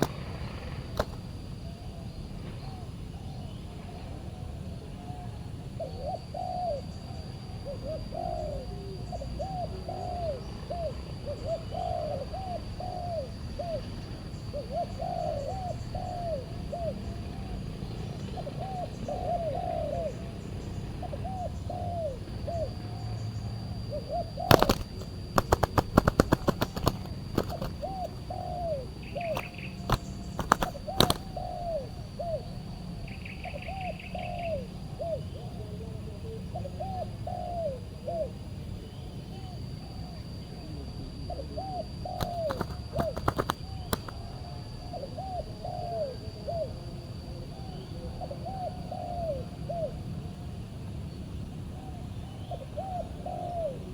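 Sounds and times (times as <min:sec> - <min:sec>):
doves cooing: 0:00.0 - 0:04.0, 0:07.6 - 0:38.4, 0:41.3 - 0:50.2, 0:51.8 - 0:53.9
sharp clatters: 0:01.0 - 0:01.2, 0:24.5 - 0:28.2, 0:29.3 - 0:31.3, 0:42.2 - 0:44.1.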